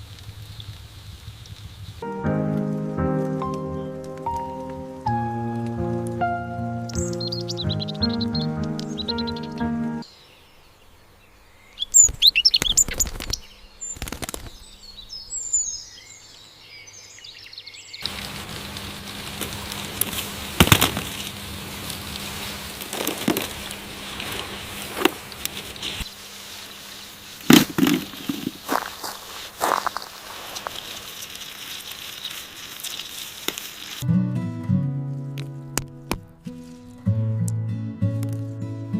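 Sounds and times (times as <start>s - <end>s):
small birds chirping: 0.0s - 2.1s, 6.6s - 34.0s
outdoor hiss: 0.0s - 34.1s
background music: 2.0s - 10.0s, 34.0s - 38.9s
loud rustling bursts: 18.0s - 34.0s.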